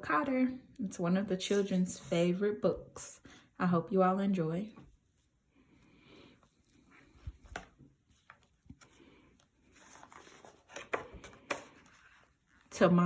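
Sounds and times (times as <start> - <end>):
paper pages rustling: 6.8 - 12.7.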